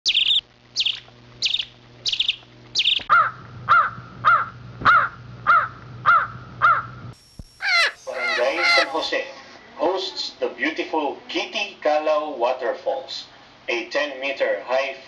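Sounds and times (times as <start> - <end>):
cawing bird call: 0.1 - 7.0, 7.6 - 9.0
harsh buzzy bird call: 0.1 - 9.1.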